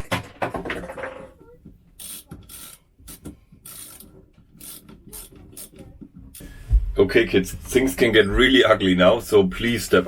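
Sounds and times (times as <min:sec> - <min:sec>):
hand tool ratcheting and scraping: 0:02.0 - 0:06.5.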